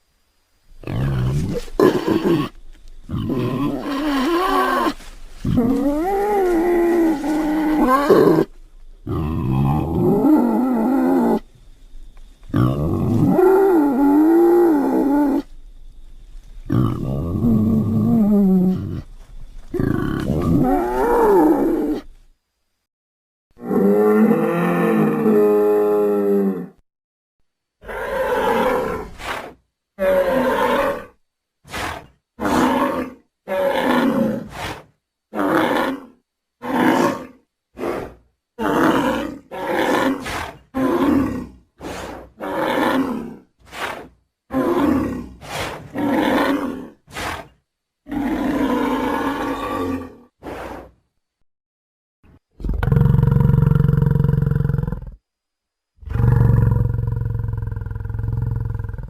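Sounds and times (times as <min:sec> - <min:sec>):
creature bellowing: 0:03.1 - 0:08.5, 0:23.6 - 0:26.8, 0:30.0 - 0:34.7, 0:35.3 - 0:50.3
creature roars and grunts: 0:03.1 - 0:08.5, 0:23.6 - 0:26.8.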